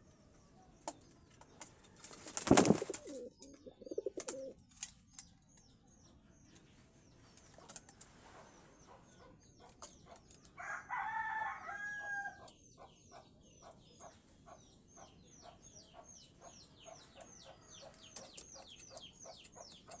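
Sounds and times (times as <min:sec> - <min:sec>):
rooster crowing: 0:10.6 - 0:12.4
small bird chirping: 0:12.4 - 0:20.0.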